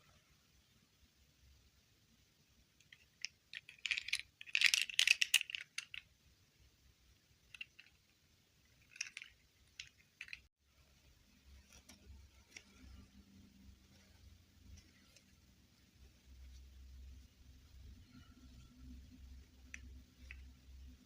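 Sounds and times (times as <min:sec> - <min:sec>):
plastic objects clicking and crackling: 0:02.8 - 0:06.1, 0:07.5 - 0:08.1, 0:08.8 - 0:10.5.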